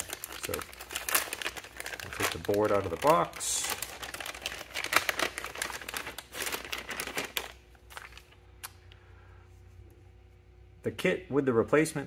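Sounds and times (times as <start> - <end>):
plastic bag crinkling: 0.0 - 8.4.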